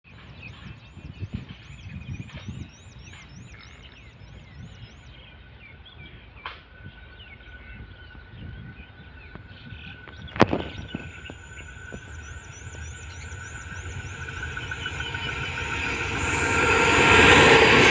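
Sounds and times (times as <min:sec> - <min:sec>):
bird-like chirps: 0:00.1 - 0:17.9
thin high tone: 0:10.0 - 0:17.9.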